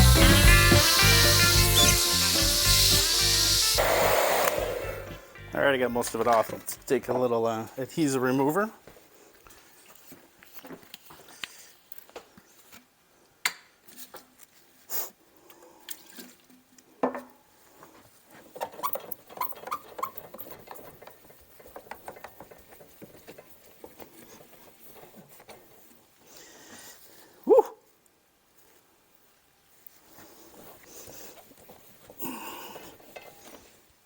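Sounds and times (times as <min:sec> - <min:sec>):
short high squeaks: 0:00.0 - 0:04.7
aerosol can spraying: 0:00.0 - 0:05.2.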